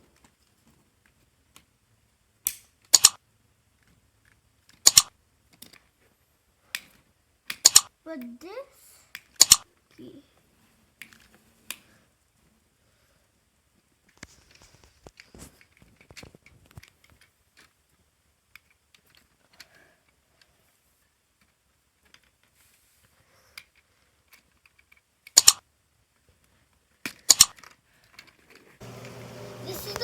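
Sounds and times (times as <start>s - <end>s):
plastic parts clicking and tapping: 2.4s - 3.2s, 3.8s - 6.1s, 6.7s - 8.3s, 9.1s - 9.9s, 10.9s - 11.8s, 14.1s - 20.5s, 21.3s - 22.6s, 23.6s - 25.6s, 26.2s - 28.8s
bursts of sharp clicks: 2.5s - 3.2s, 4.8s - 5.1s, 7.5s - 7.9s, 9.2s - 9.6s, 25.3s - 25.6s.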